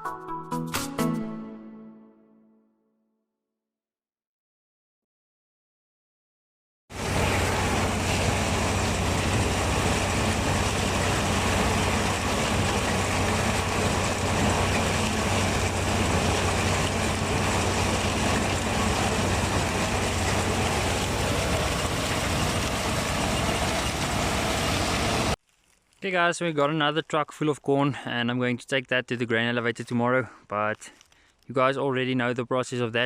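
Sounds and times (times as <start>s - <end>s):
large vehicle engine running: 6.9s - 25.4s.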